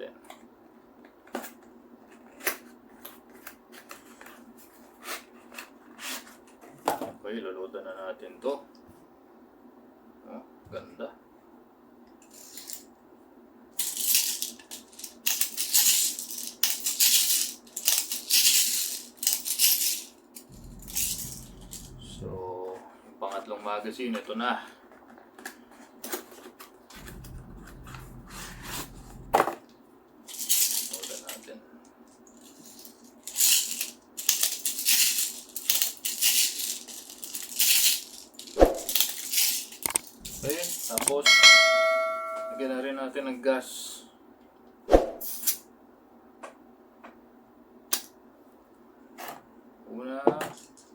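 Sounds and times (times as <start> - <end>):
bbs rattling in a speed loader: 20.5 - 22.4, 27.0 - 29.4.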